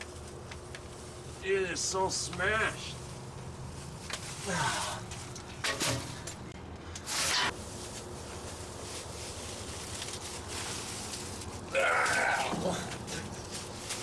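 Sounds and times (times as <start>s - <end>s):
steady low hum: 0.0s - 14.0s
shovel scraping garbage: 4.4s - 7.7s.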